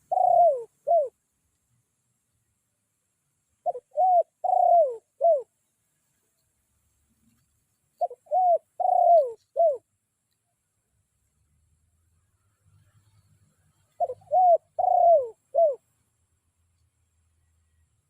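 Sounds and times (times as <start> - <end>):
dove cooing: 0.0 - 1.2, 3.6 - 5.5, 8.0 - 9.9, 13.9 - 15.8.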